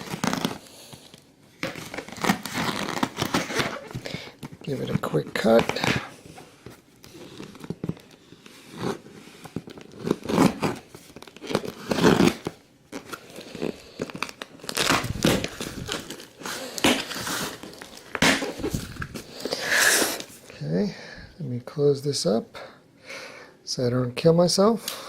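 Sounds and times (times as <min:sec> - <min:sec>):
cardboard tearing and crinkling: 0:00.0 - 0:06.4, 0:07.0 - 0:20.4.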